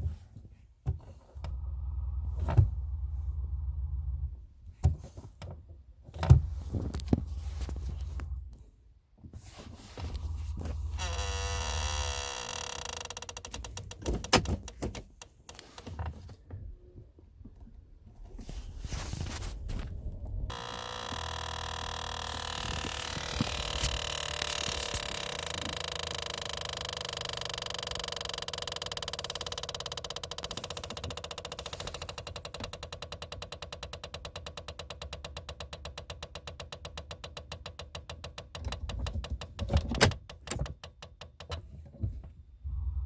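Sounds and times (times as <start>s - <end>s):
thumps: 17.4s - 29.6s
brake pedal squealing: 19.8s - 33.2s.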